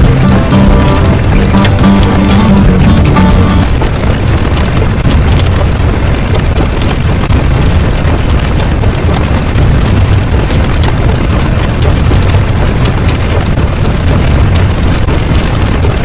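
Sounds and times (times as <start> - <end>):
music: 0.0 - 3.8
loud continuous rumbling: 0.0 - 16.0.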